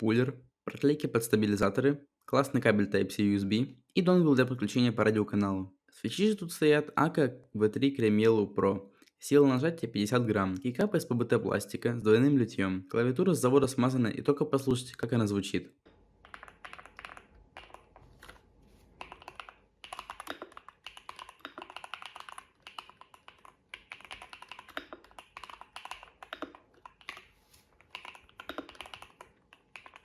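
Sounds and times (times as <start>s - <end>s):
mechanical keyboard typing: 16.2s - 18.4s, 19.0s - 30.0s.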